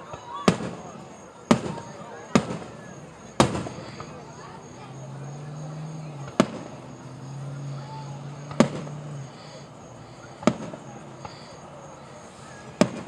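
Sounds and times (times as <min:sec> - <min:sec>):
fireworks bangs: 0:00.0 - 0:13.0
faint firework pop: 0:08.5 - 0:09.0.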